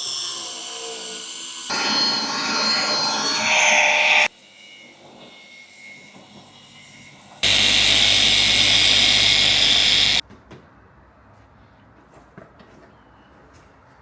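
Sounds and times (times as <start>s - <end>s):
workshop machine rushing: 7.4s - 10.2s.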